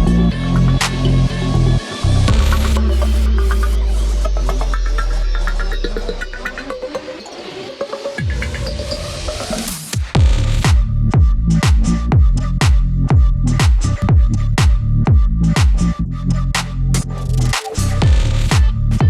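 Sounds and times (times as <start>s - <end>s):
deep bass notes sliding downward: 0.0s - 7.0s, 10.2s - 19.0s
electronic dance music: 0.0s - 19.0s.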